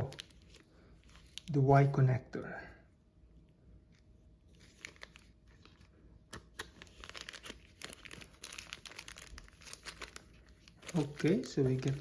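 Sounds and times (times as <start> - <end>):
plastic packaging crinkling: 0.0 - 1.6, 4.5 - 12.0.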